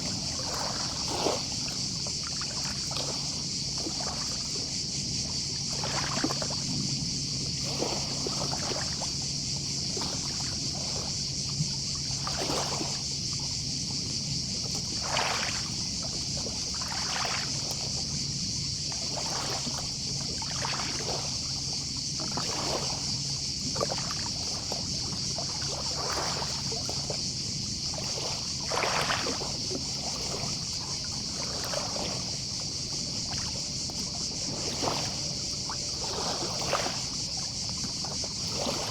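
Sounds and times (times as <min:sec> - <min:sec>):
distant cicadas droning: 0:00.0 - 0:38.9
sea waves lapping on shore: 0:00.0 - 0:38.9.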